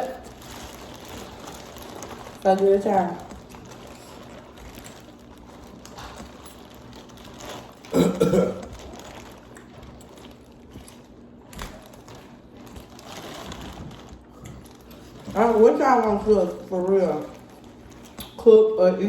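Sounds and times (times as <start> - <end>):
chewing and smacking: 0.0 - 8.0, 8.6 - 18.4.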